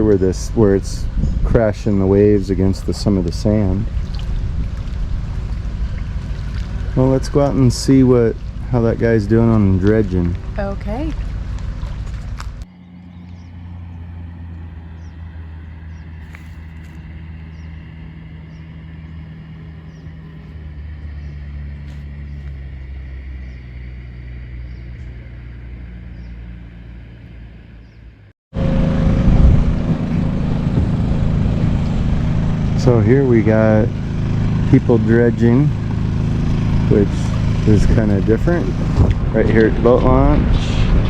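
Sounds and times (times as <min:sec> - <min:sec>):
engine humming: 0:00.0 - 0:41.0
rushing noise: 0:28.6 - 0:34.7.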